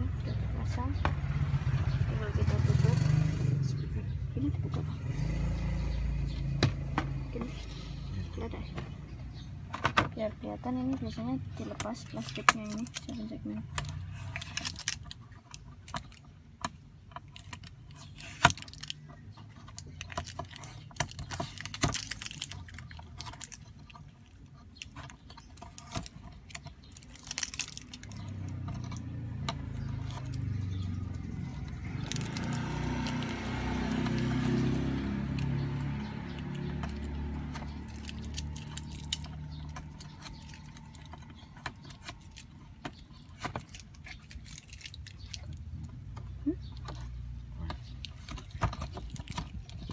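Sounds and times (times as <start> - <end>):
vehicle engine drone: 0.0 - 15.2, 26.8 - 49.9
small parts and tools rattling: 0.1 - 49.9.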